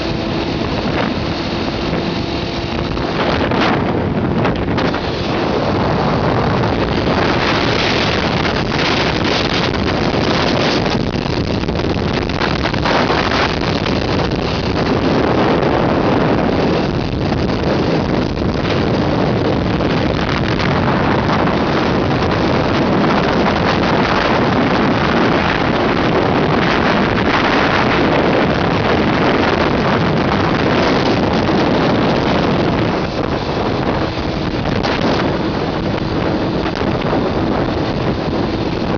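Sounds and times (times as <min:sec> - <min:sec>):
motorcycle engine: 0:00.0 - 0:38.9
wind rushing on microphone: 0:00.0 - 0:38.9.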